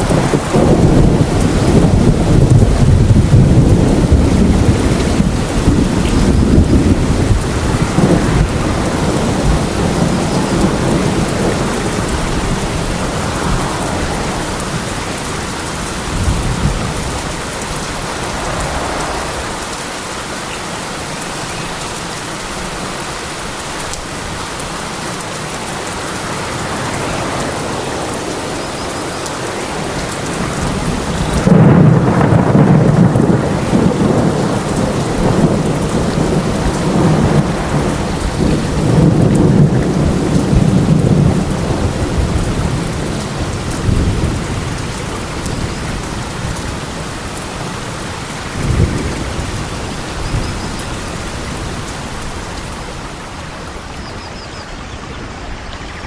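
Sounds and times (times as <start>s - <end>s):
rolling thunder: 0.0s - 21.2s, 26.6s - 53.6s
steady rain: 0.0s - 56.0s.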